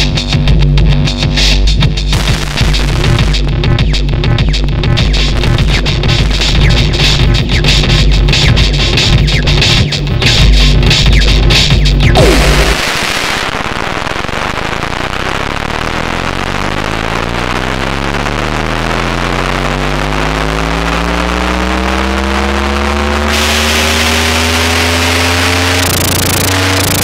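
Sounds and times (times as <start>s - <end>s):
droning tone rising in pitch: 12.1s - 13.2s, 17.9s - 27.0s.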